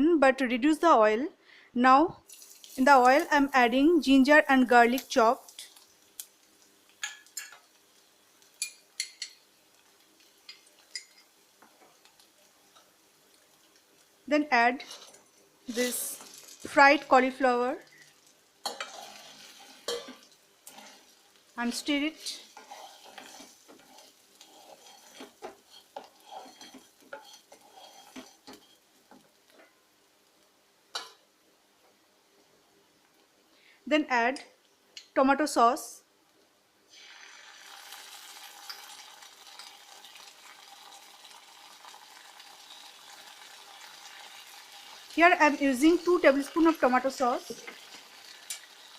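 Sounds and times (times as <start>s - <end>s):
metal utensil clinking on pan: 7.0s - 7.7s, 8.5s - 9.4s, 10.4s - 11.3s, 18.6s - 21.0s, 22.6s - 28.8s
spatula scraping frying pan: 14.8s - 16.6s, 18.6s - 29.3s, 45.9s - 48.9s.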